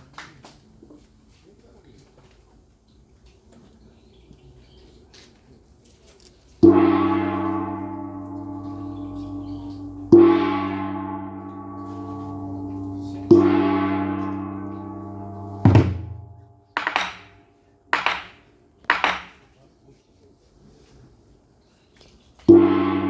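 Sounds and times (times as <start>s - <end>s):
large gong ringing: 6.6s - 16.6s, 22.5s - 23.0s
sharp hit: 6.6s - 16.6s, 22.5s - 23.0s.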